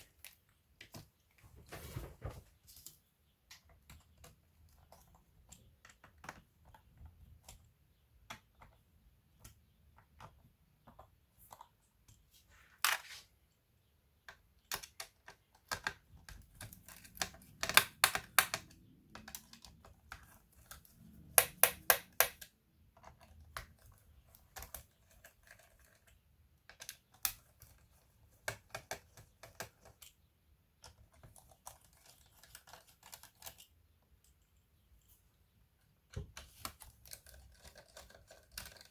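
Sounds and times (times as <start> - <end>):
clicks of plastic laptop parts: 14.2 - 26.0.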